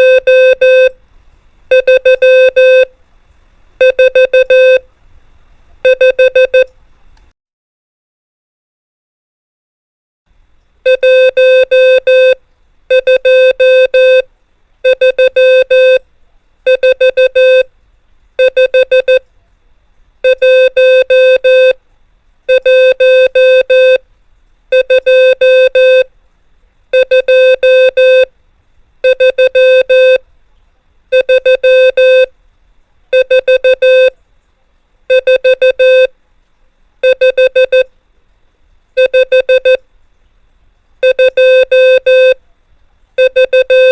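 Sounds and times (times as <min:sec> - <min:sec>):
morse code beeps: 0:00.0 - 0:01.0, 0:01.7 - 0:02.9, 0:03.8 - 0:04.8, 0:05.9 - 0:06.7, 0:10.9 - 0:14.3, 0:14.9 - 0:16.0, 0:16.7 - 0:17.7, 0:18.4 - 0:19.2, 0:20.2 - 0:21.8, 0:22.5 - 0:24.0, 0:24.7 - 0:26.1, 0:27.0 - 0:28.3, 0:29.0 - 0:30.2, 0:31.1 - 0:32.3, 0:33.2 - 0:34.2, 0:35.1 - 0:36.1, 0:37.0 - 0:37.9, 0:39.0 - 0:39.8, 0:41.0 - 0:42.4, 0:43.2 - 0:43.9.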